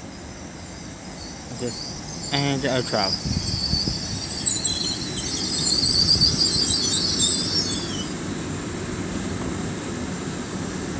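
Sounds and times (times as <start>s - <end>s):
train wheels squealing: 0.0s - 8.4s
train low rumble: 0.0s - 10.9s.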